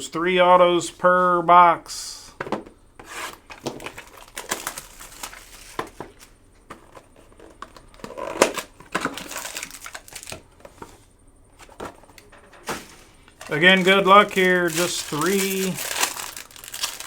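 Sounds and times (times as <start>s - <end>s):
plastic and foil wrapping crinkling: 3.1s - 11.0s, 11.6s - 17.0s.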